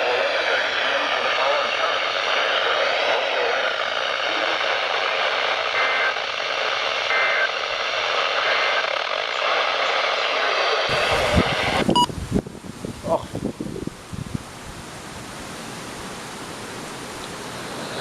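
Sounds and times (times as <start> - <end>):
radio static hiss: 0.0 - 12.2, 17.1 - 18.0.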